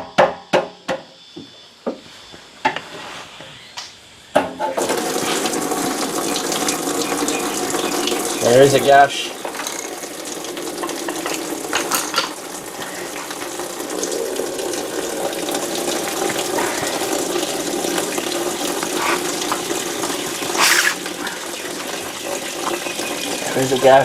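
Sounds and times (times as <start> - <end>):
petrol gushing from tank: 4.8 - 24.0.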